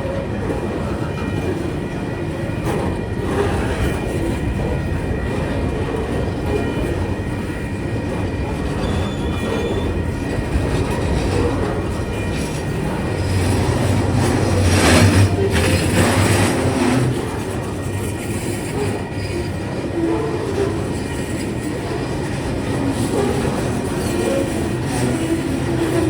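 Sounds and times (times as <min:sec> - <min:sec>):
train wheels rumbling on rails: 0:00.0 - 0:26.0
faint wheel squeal: 0:08.7 - 0:10.4
deep engine drone: 0:10.4 - 0:17.7.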